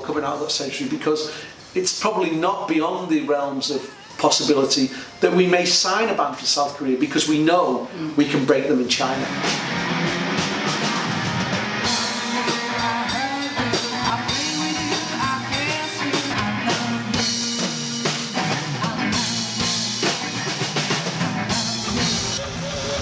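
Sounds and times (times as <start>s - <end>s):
rock band playing: 9.2s - 23.0s
person singing: 11.8s - 17.7s, 18.4s - 20.1s, 21.5s - 23.0s.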